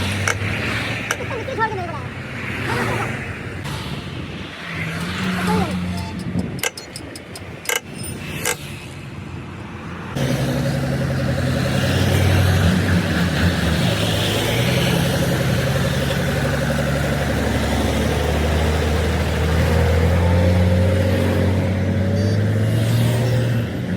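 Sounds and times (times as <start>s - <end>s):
sharp clicks: 4.9s - 8.6s
heavy truck engine running: 10.2s - 22.6s.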